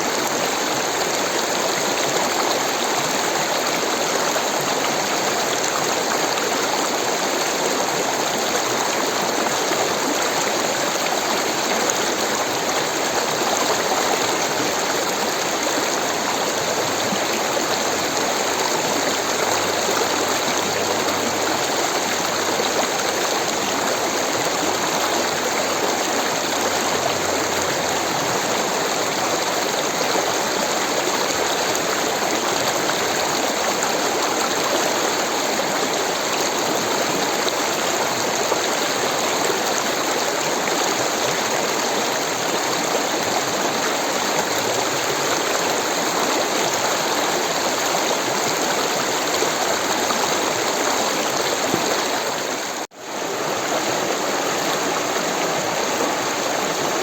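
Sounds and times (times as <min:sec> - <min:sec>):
rushing stream water: 0:00.0 - 0:57.0.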